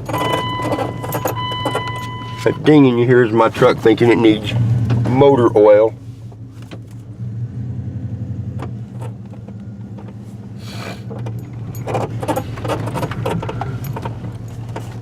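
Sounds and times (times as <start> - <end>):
loose things rattling: 0.0 - 4.3, 11.0 - 15.0
truck engine running: 0.0 - 15.0.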